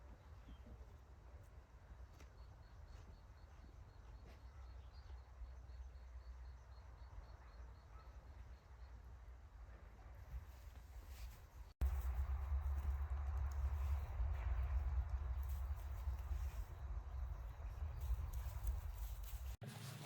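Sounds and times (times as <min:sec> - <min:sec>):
low steady rumble: 0:11.8 - 0:19.6.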